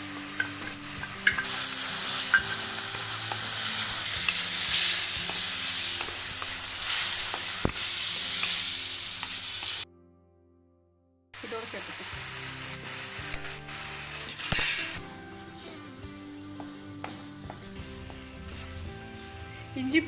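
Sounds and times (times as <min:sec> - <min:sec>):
food sizzling in hot oil: 0:00.0 - 0:09.8, 0:11.4 - 0:19.9
spoon clicking against pan: 0:01.2 - 0:01.5, 0:02.3 - 0:02.6.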